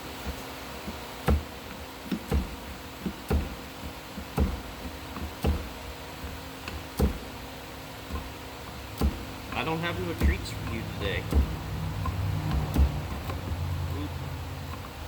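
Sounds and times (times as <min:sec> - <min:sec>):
shop hum: 0:00.0 - 0:15.0
metal clicks and knocks: 0:08.0 - 0:13.7.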